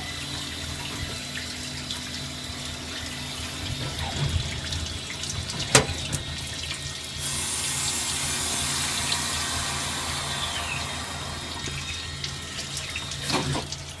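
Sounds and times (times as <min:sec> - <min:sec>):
coolant splashing hiss: 0:00.6 - 0:14.0
lathe machine hum: 0:07.0 - 0:14.0.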